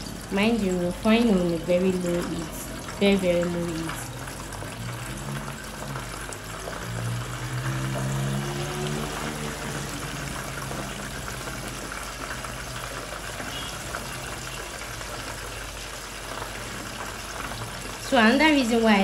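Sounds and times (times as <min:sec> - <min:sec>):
food sizzling in oil: 0:00.0 - 0:19.0
low hum rising in pitch: 0:01.8 - 0:12.8.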